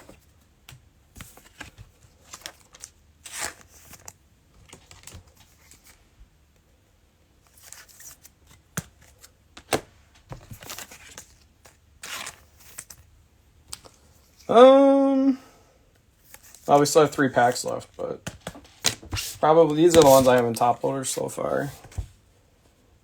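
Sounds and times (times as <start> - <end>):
wrapper crinkling and tearing: 18.8 - 20.7.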